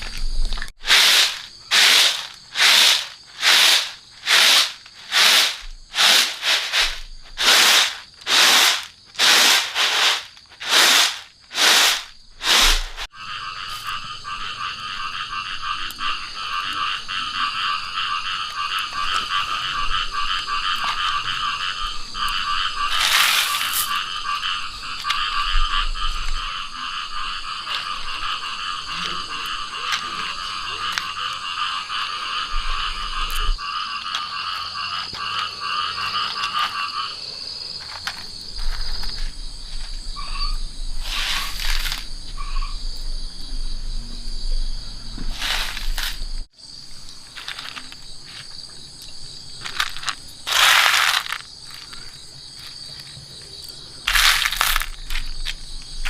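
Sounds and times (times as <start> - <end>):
frogs calling: 0.0 - 43.4, 44.7 - 56.0
rhythmic scraping strokes: 0.8 - 13.1.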